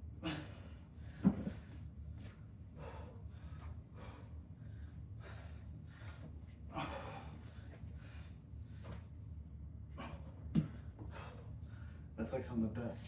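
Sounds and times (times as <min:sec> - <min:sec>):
man gasping breaths: 0:02.8 - 0:08.4.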